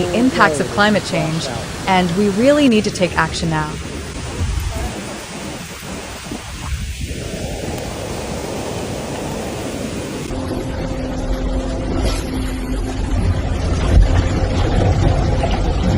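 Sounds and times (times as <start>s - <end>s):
heavy rumble: 0.0s - 15.9s
rushing water: 0.0s - 15.9s
low hum: 7.2s - 15.9s.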